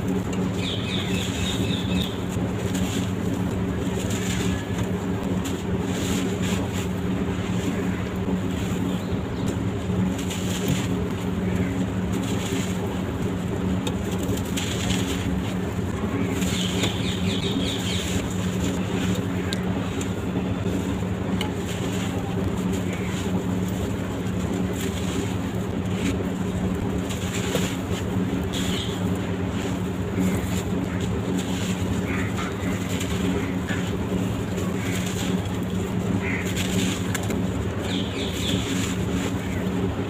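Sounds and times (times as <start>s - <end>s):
small birds chirping: 0.4s - 5.2s, 7.4s - 12.5s, 15.8s - 20.7s, 28.2s - 40.0s.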